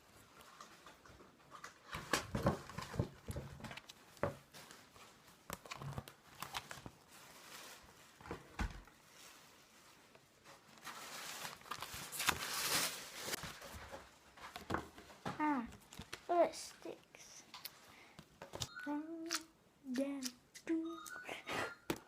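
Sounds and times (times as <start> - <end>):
rustling: 0.1 - 16.7.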